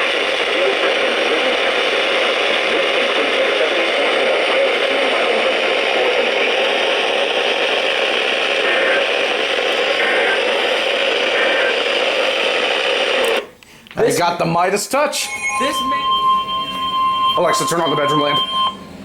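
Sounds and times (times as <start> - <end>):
radio static hiss: 0.0 - 13.6.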